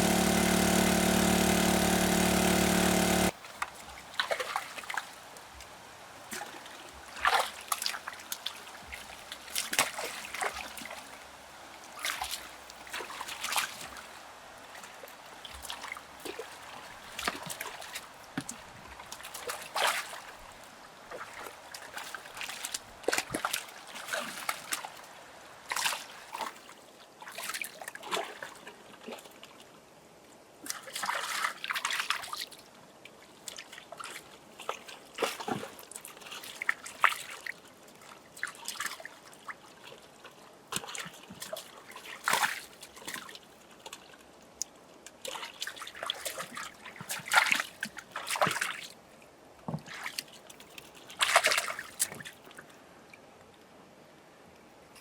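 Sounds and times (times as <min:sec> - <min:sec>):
water splashing and trickling: 0:49.8 - 0:52.5.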